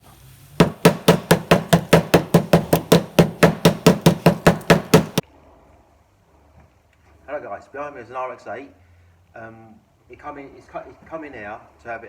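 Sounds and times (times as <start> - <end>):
rapid sharp knocks with ringing: 0.6 - 5.2.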